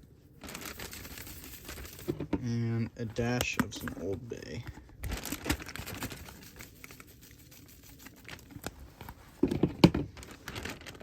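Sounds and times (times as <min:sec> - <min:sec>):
seasoning shaker clicking: 0:06.4 - 0:08.3.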